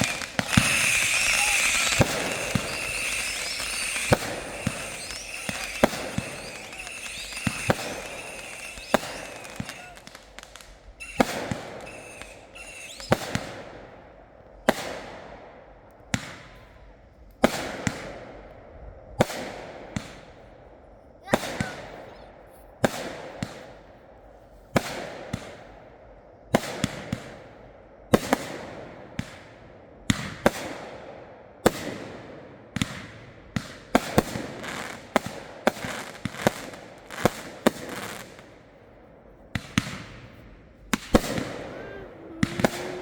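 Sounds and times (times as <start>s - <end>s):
firework hiss: 0.0s - 13.6s, 40.9s - 43.0s
fireworks bangs: 0.0s - 14.0s, 33.6s - 38.6s, 39.5s - 43.0s.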